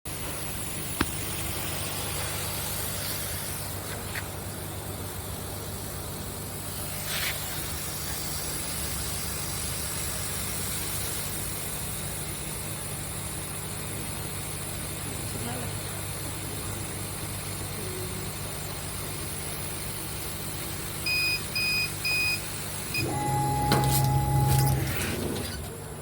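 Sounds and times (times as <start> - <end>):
air hissing: 0.4 - 4.6
low machine hum: 11.6 - 26.0.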